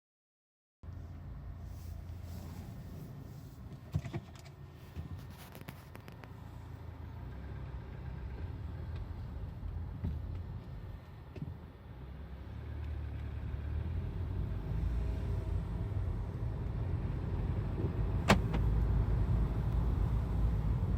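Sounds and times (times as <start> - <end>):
car engine running: 17.1 - 20.9.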